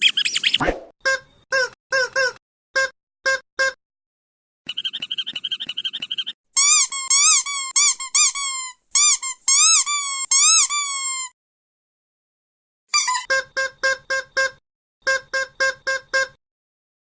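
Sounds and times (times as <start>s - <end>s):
squeaky rubber dog toys: 4.7s - 11.3s, 12.9s - 16.4s.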